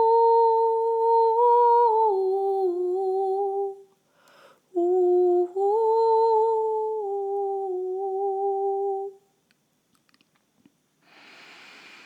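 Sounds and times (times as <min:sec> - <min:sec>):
woman humming: 0:04.7 - 0:09.2.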